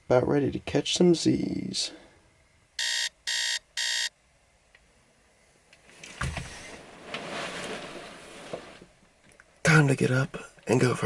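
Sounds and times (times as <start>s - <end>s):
alarm beeping: 2.8s - 4.1s.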